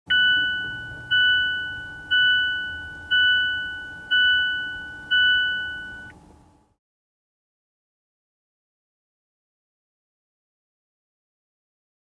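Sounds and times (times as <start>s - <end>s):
seatbelt warning chime: 0.1s - 6.2s.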